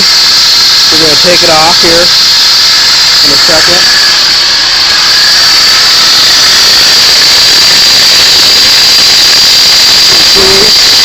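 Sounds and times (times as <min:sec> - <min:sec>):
car engine with high-pitched whine: 0:00.0 - 0:11.0.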